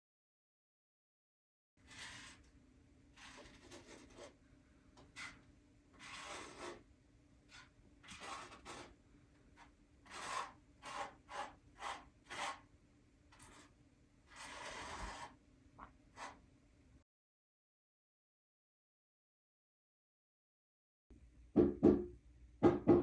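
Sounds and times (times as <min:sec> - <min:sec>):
hand tool scraping surface: 0:01.8 - 0:02.4, 0:05.1 - 0:05.4, 0:06.0 - 0:06.8, 0:07.5 - 0:09.0, 0:09.6 - 0:12.6, 0:14.3 - 0:15.3.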